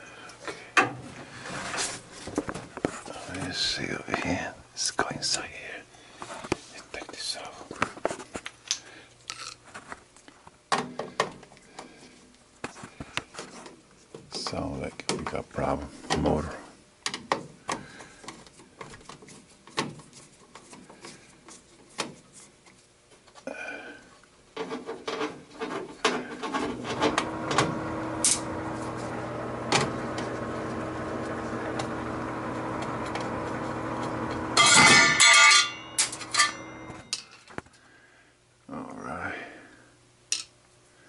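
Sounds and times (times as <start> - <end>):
air conditioner humming: 0.0 - 41.0
loud metallic clanking: 34.6 - 37.0
metal panels and tools clicking: 34.6 - 37.3.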